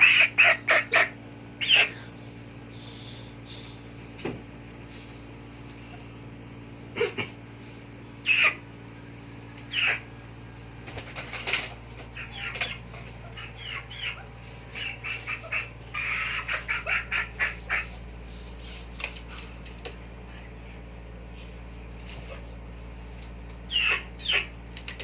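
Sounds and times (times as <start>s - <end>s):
chicken clucking: 0.0s - 2.0s, 8.2s - 8.6s, 9.6s - 10.2s, 11.2s - 18.0s, 23.7s - 25.0s.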